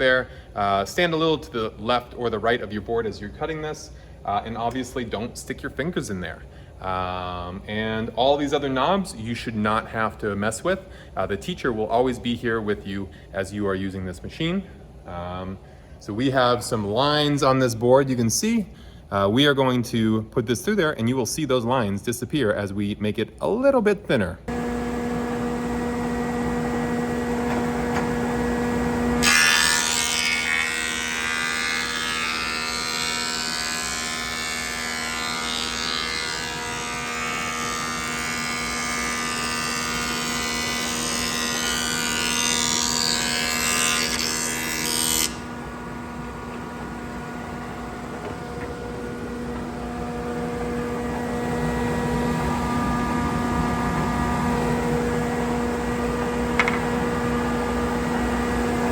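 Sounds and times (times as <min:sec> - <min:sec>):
planer cutting board: 0:24.5 - 0:58.9
thickness planer humming: 0:24.5 - 0:58.9.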